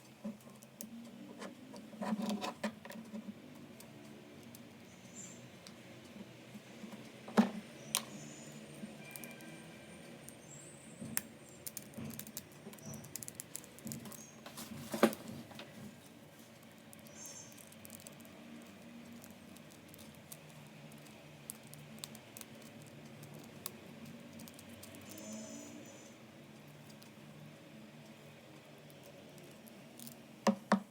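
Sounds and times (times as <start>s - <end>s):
small model parts clicking: 2.1s - 4.8s, 11.1s - 14.3s, 16.5s - 25.5s, 28.0s - 30.3s.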